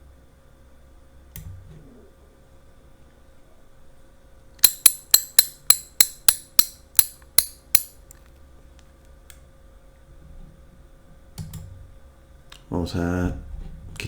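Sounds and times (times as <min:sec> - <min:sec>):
ratchet noisemaker clacking: 0:04.6 - 0:07.9.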